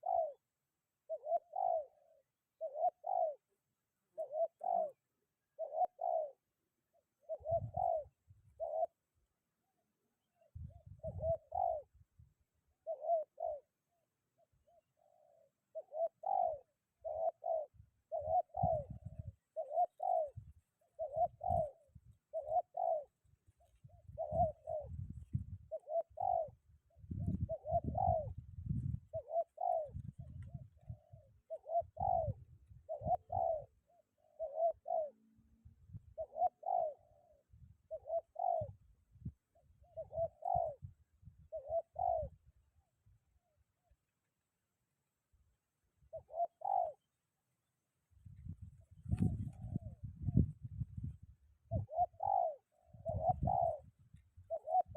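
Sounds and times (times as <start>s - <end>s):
dove cooing: 0.0s - 42.5s, 46.0s - 47.1s, 49.0s - 50.9s, 51.5s - 54.9s
wind buffeting microphone: 23.8s - 25.7s, 27.0s - 29.2s, 48.2s - 51.9s.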